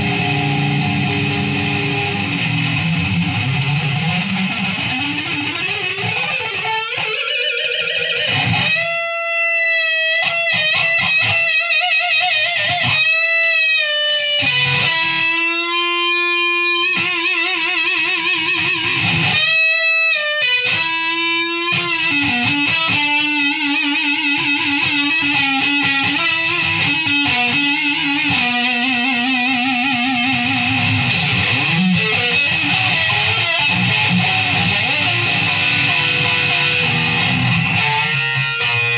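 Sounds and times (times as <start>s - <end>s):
electric guitar lead melody: 0.0s - 38.9s.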